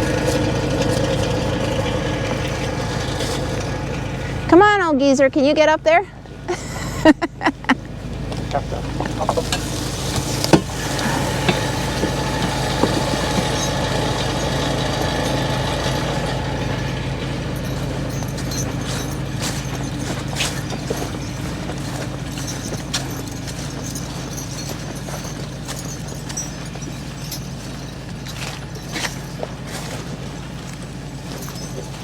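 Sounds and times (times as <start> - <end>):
skid steer engine running: 0.0 - 32.0
sharp knocks and clanks: 8.2 - 32.0.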